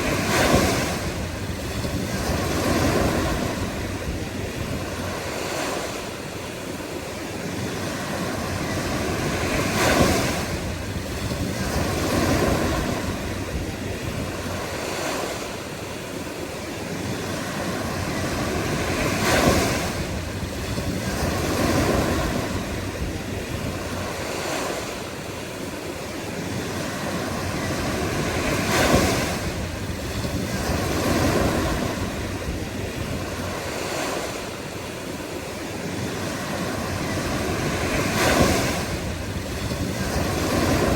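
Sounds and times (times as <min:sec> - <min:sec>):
ocean waves washing in: 0:00.0 - 0:40.9
waves breaking sharply: 0:00.0 - 0:40.9.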